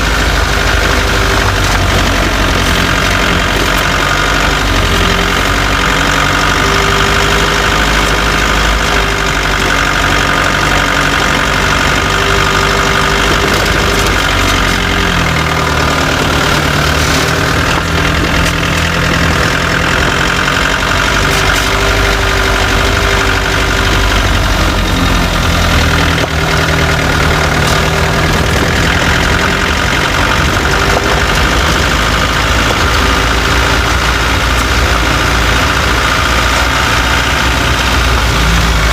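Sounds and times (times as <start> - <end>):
car engine and running gear: 0.0 - 38.9.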